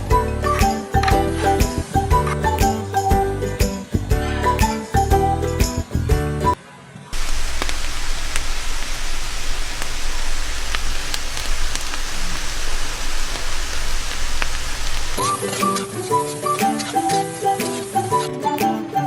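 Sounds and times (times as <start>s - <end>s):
small pops of frying: 7.2s - 15.3s
food sizzling in a pan: 7.2s - 18.3s.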